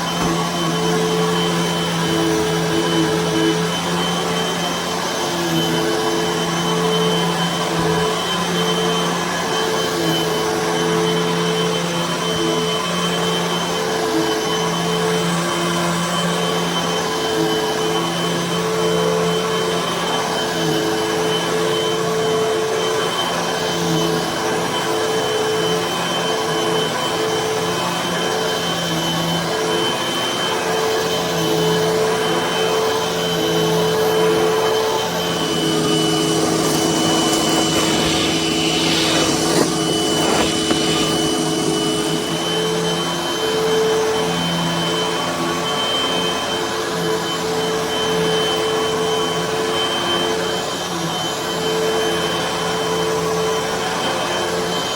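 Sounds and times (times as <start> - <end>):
vacuum cleaner on carpet: 0.0 - 54.9.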